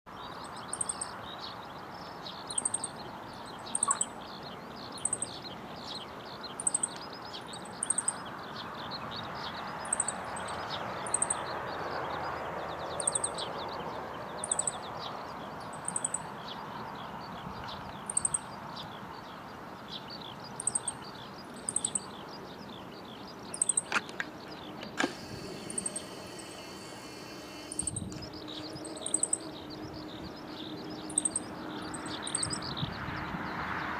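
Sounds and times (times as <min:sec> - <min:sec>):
bunting high chirps: 0:03.6 - 0:04.2, 0:20.6 - 0:21.0, 0:23.5 - 0:29.5
faint chirring: 0:24.8 - 0:29.4
outdoor hiss: 0:24.9 - 0:27.9.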